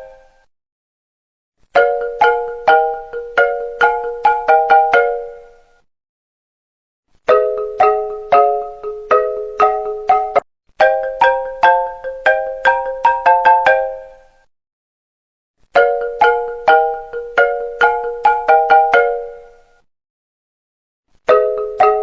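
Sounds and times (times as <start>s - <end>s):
marimba ringtone: 1.8s - 5.7s, 7.3s - 14.5s, 15.8s - 19.7s, 21.3s - 22.0s.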